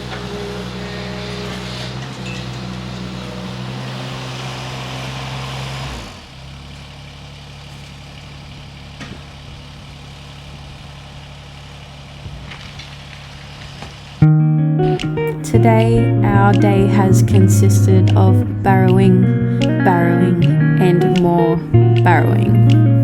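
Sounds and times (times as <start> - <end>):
machine engine running: 0.0 - 14.2.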